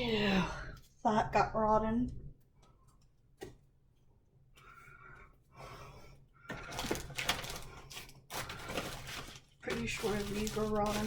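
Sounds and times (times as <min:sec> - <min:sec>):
food packages rustling and clattering: 0:06.4 - 0:11.0.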